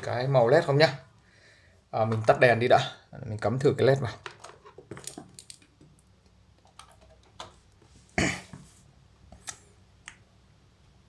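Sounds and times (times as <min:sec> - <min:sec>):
small clicks and handling knocks: 0:04.2 - 0:07.6.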